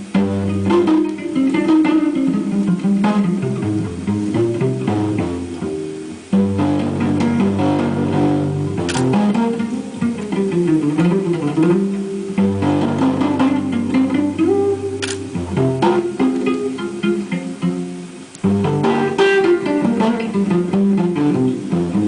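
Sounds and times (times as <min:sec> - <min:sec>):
bass line: 0:00.0 - 0:16.9
plucked guitar music: 0:00.0 - 0:22.0.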